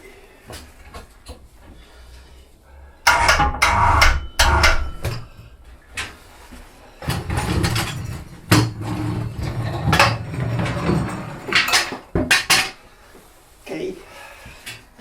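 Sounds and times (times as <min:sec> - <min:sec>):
metal knocks and clanks: 0:03.1 - 0:05.6, 0:07.0 - 0:12.8.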